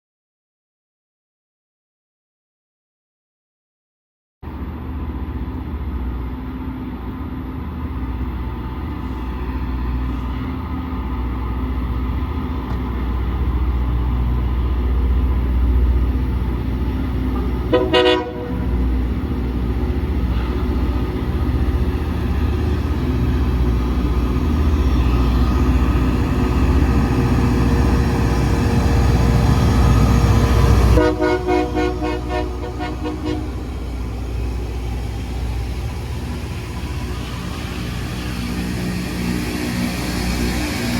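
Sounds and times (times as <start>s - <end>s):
rail grinding roar: 4.4s - 40.9s
pulsing train horn: 17.4s - 19.0s, 30.6s - 34.1s
train horn blast: 17.7s - 18.8s, 30.9s - 33.8s.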